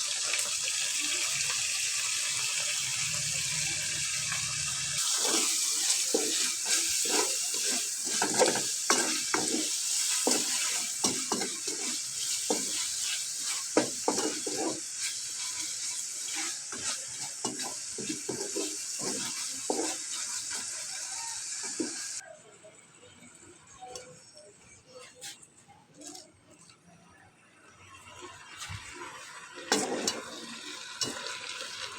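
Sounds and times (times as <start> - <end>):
food sizzling in a pan: 0.0 - 22.3, 27.8 - 31.9
utensil scraping a pan: 5.0 - 20.7, 29.6 - 31.6.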